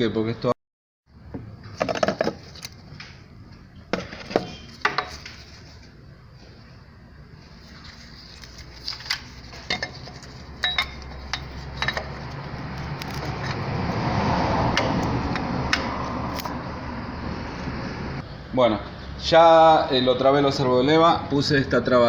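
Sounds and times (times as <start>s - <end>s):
metal tools clinking: 9.5s - 13.8s.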